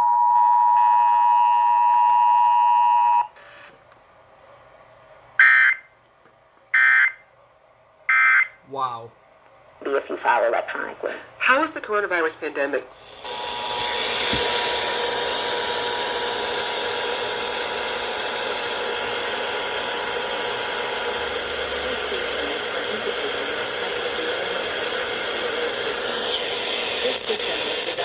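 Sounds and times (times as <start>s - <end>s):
radio static hiss: 21.2s - 28.0s.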